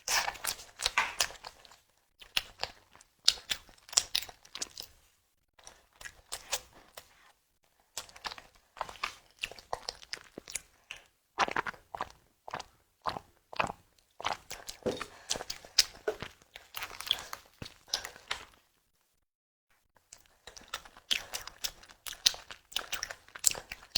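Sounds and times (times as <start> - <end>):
chewing and crunching: 0.0 - 18.7, 20.0 - 23.9.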